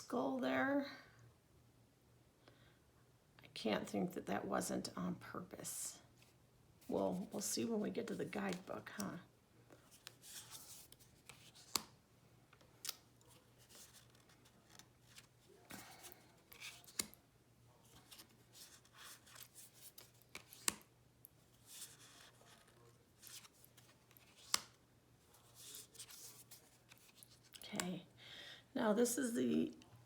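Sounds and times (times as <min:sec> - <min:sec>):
cards sliding rustle: 0:09.7 - 0:12.0, 0:12.6 - 0:17.2, 0:17.8 - 0:27.6
card clicks: 0:16.5 - 0:17.2.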